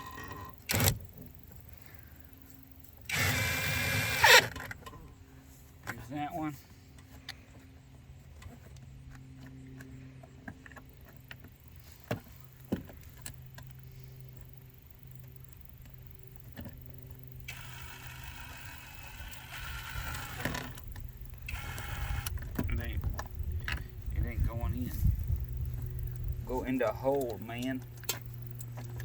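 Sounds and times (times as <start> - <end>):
rough hissing mechanical noise: 0.0 - 4.7, 13.8 - 27.1
steady low hum: 0.0 - 29.0.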